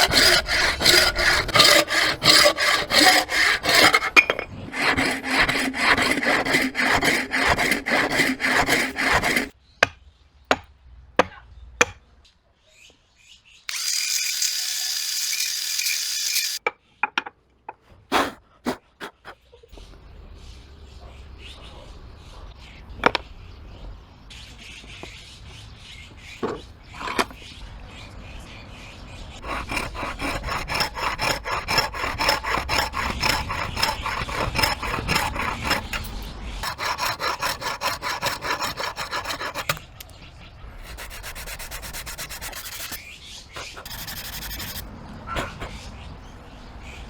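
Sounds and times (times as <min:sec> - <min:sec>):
hand tool working wood: 0:00.0 - 0:09.5, 0:29.4 - 0:39.8, 0:40.8 - 0:43.0, 0:43.6 - 0:44.8.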